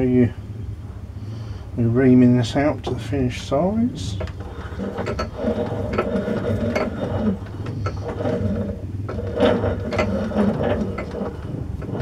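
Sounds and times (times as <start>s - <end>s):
lathe running with gear clatter: 3.9s - 12.0s.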